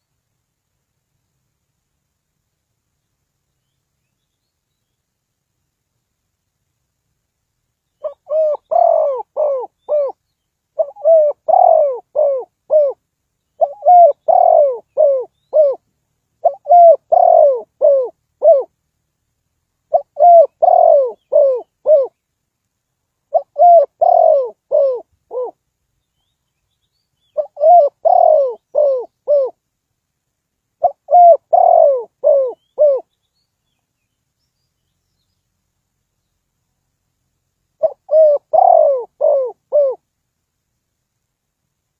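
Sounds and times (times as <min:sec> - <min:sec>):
dove cooing: 0:08.0 - 0:10.2, 0:10.8 - 0:13.0, 0:13.6 - 0:15.8, 0:16.4 - 0:18.7, 0:19.9 - 0:22.2, 0:23.3 - 0:25.6, 0:27.4 - 0:29.6, 0:30.8 - 0:33.1, 0:37.8 - 0:40.0.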